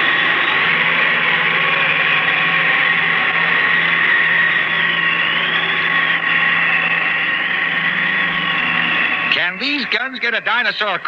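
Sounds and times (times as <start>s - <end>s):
steady electronic hum: 0.0s - 11.0s.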